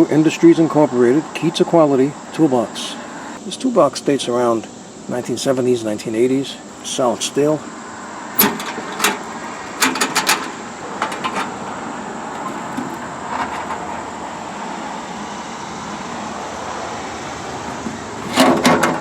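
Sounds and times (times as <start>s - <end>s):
steady background hiss: 0.0s - 19.0s
metallic clicks and knocks: 8.4s - 11.7s.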